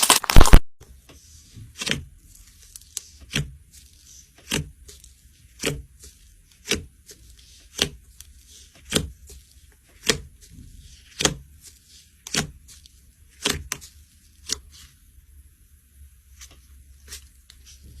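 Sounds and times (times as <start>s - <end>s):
slime popping: 0.0s - 0.6s.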